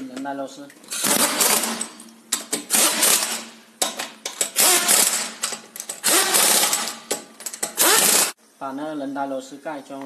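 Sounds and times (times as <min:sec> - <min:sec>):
impact wrench hammering: 0:01.0 - 0:08.3.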